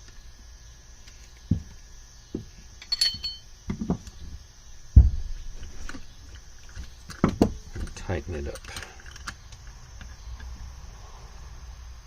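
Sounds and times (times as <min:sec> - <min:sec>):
ringing metallic clink: 0:02.8 - 0:03.5.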